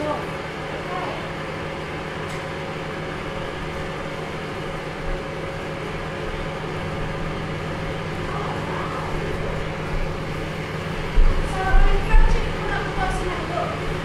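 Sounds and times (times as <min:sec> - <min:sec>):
steady droning hum: 0:00.0 - 0:14.0
dense noisy wash: 0:04.8 - 0:14.0.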